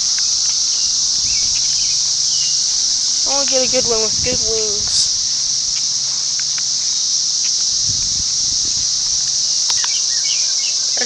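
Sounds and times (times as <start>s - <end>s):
cicadas droning: 0.0s - 11.0s
faint clicks: 9.6s - 10.0s.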